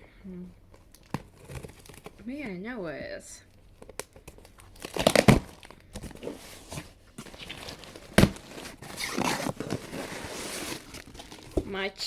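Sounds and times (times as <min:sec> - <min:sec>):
plastic packaging crinkling: 0:03.7 - 0:11.8.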